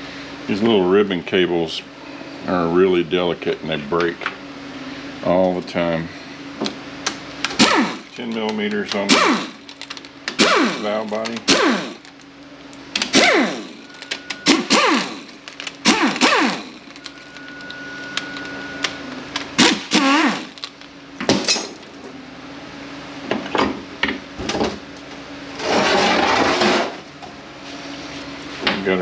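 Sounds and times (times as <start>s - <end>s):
power tool whirring: 7.5s - 12.2s, 13.0s - 20.8s.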